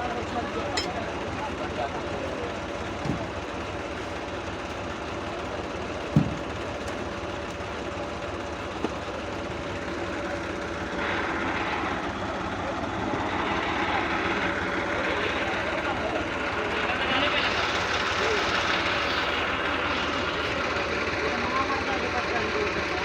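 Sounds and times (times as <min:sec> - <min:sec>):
combine harvester engine running: 0:00.0 - 0:23.0.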